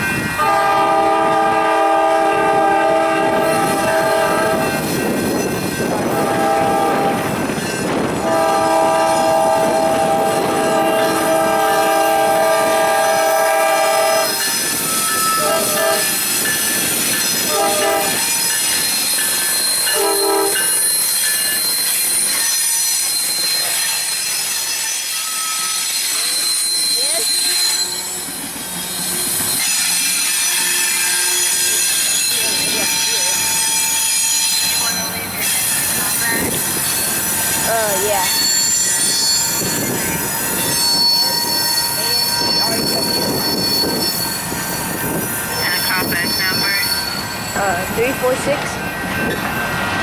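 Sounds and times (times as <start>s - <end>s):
train wheels clattering and squealing: 0.0s - 1.6s, 2.4s - 50.0s
locomotive air horn blasts: 0.4s - 4.8s, 6.1s - 7.4s, 8.2s - 14.4s, 15.4s - 16.2s, 17.5s - 18.3s, 19.9s - 20.7s.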